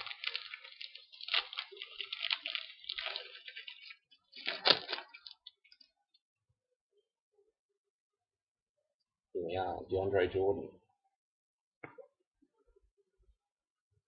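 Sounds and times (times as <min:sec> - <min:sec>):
wrapper crinkling and tearing: 0:00.0 - 0:05.9.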